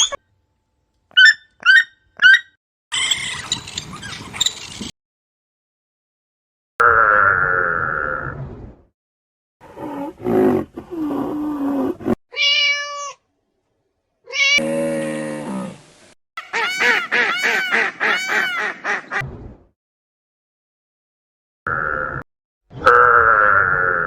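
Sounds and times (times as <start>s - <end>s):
cats meowing: 12.3s - 13.2s, 14.3s - 14.6s.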